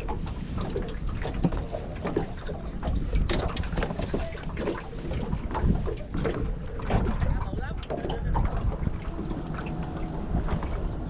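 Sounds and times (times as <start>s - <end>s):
wind buffeting microphone: 0.0s - 11.0s
clicks from handling fishing gear: 0.6s - 7.2s.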